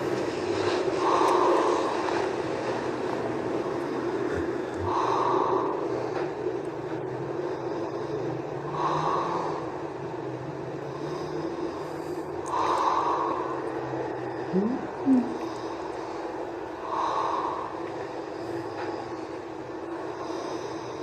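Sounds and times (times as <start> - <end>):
steady hum: 0.0 - 21.0
person snoring: 14.2 - 15.8.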